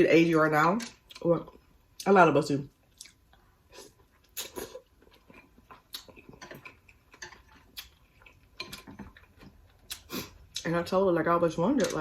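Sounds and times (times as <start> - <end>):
mouth chewing food: 2.8 - 10.7.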